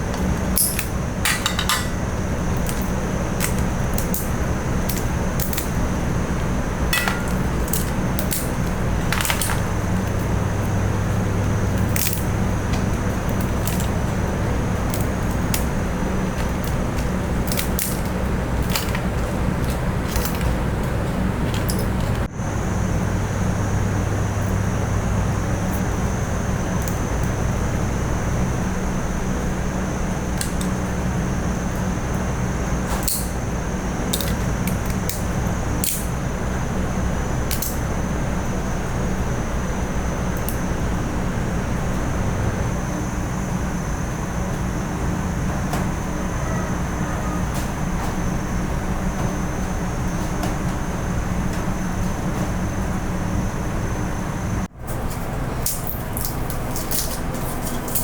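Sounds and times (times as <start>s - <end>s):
utensils clicking and clinking: 0.0s - 22.3s, 54.9s - 58.0s
rushing kitchen noise with hum: 0.0s - 58.0s.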